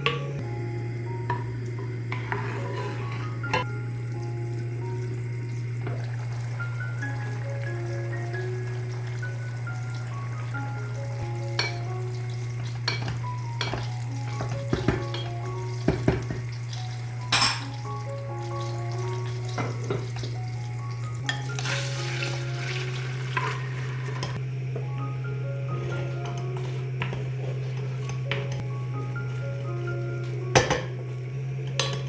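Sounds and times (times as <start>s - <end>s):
food sizzling in a pan: 0.0s - 32.0s
soft mallet background music: 0.0s - 32.0s
utensil knocking against pan: 12.9s - 16.5s.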